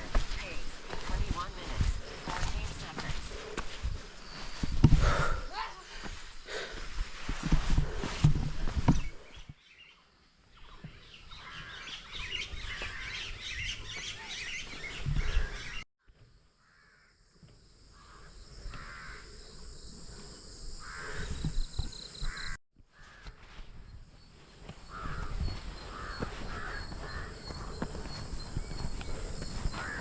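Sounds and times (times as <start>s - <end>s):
small birds chirping: 0.0s - 7.0s, 8.6s - 15.8s, 23.8s - 30.0s
crows cawing: 11.3s - 12.0s, 16.6s - 17.2s, 17.9s - 19.4s, 20.8s - 21.4s, 22.2s - 23.6s, 24.8s - 30.0s.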